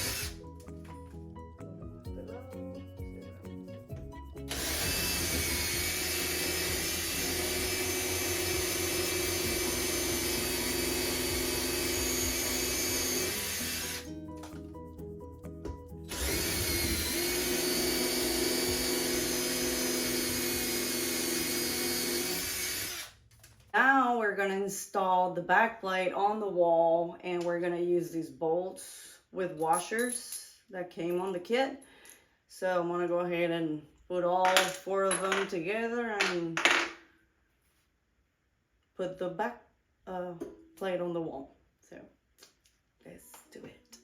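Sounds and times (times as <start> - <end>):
power drill boring into wall: 0.0 - 0.4, 4.5 - 14.1, 16.1 - 23.2.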